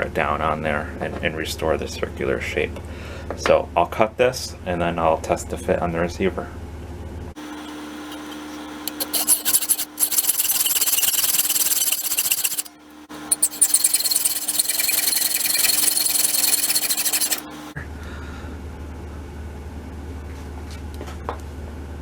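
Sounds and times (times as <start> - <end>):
power saw cutting metal: 7.4 - 17.8.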